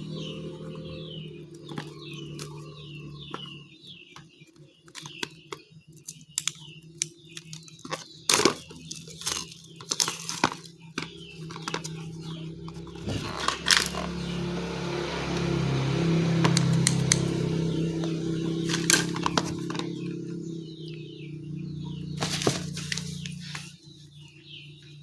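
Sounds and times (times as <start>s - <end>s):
packaging crinkling and tearing: 6.0s - 12.0s.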